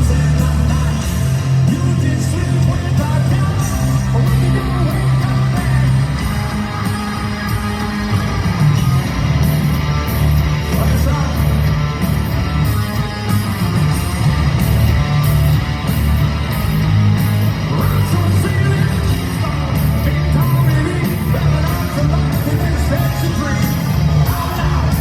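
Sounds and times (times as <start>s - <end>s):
person singing or yelling: 0.0s - 8.3s, 17.7s - 25.0s
hard rock band playing live: 0.0s - 25.0s.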